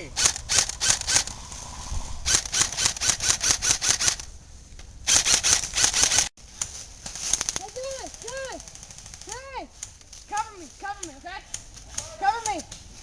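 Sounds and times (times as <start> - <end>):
airsoft guns firing: 2.3 - 4.2, 7.2 - 9.5.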